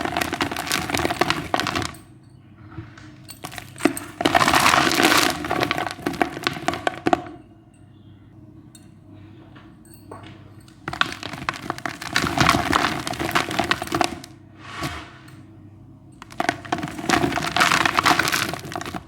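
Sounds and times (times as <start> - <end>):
cement chunks crumbling: 0.0 - 2.1, 3.4 - 7.4, 10.7 - 14.3, 16.2 - 19.0.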